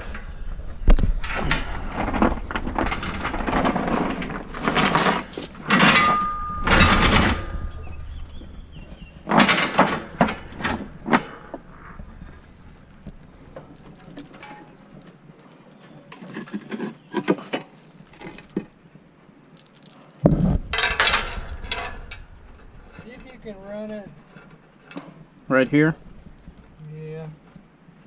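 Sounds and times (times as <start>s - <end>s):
low rumble: 0.0s - 13.9s, 20.3s - 24.2s
irregular knocks and clatters: 0.0s - 18.8s, 19.6s - 26.8s.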